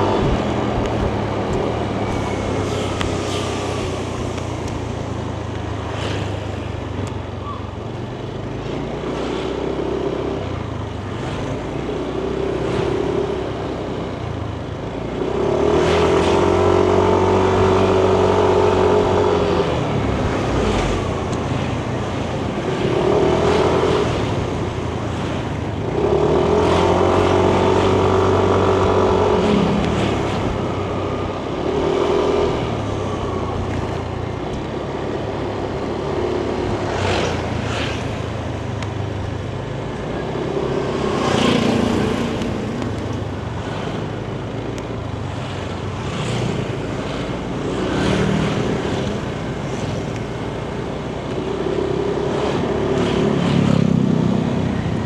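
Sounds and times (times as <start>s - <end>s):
road and wind noise: 0.0s - 55.0s
scooter engine revving: 35.0s - 55.0s.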